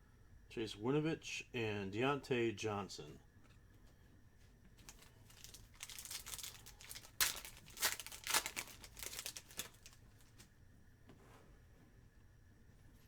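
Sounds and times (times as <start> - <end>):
wrapper tearing and crinkling: 4.8 - 10.2.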